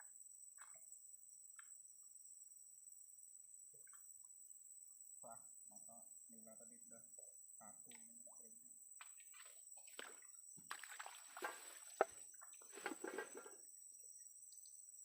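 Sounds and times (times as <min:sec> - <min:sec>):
water splashing and sloshing: 0:09.0 - 0:13.6.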